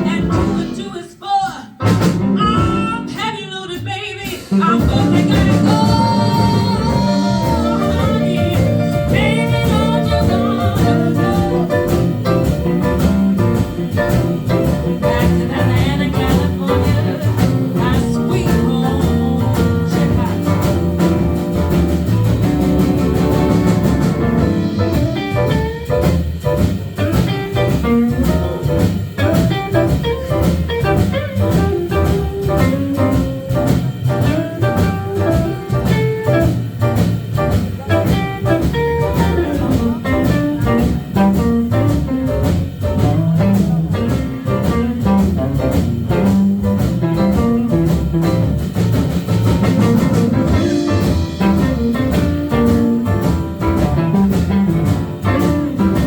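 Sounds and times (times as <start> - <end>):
band playing slow blues: 0.0 - 56.0
person singing: 2.4 - 12.0.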